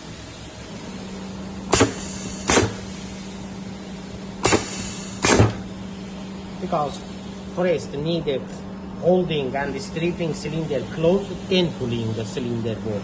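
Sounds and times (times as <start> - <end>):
steady low hum: 0.0 - 13.0
pneumatic cylinder strokes: 1.7 - 3.2, 4.4 - 5.6.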